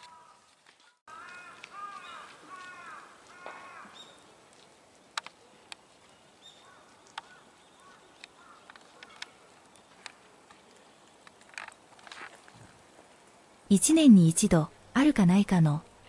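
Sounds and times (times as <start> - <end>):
crow cawing: 0.0 - 0.5, 1.1 - 4.2, 6.6 - 9.5.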